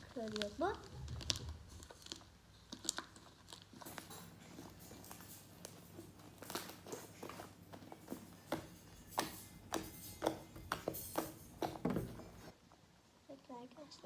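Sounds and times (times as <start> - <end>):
slime crackling and popping: 0.0 - 4.7, 6.2 - 7.4.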